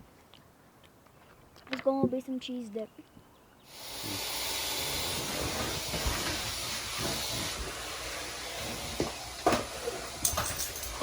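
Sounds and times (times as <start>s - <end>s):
steady hiss: 3.7s - 11.0s.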